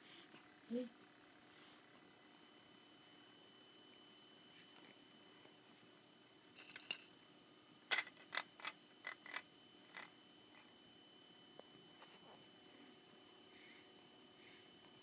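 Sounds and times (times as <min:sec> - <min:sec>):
plastic toys clacking: 0:06.6 - 0:07.2, 0:07.9 - 0:10.1.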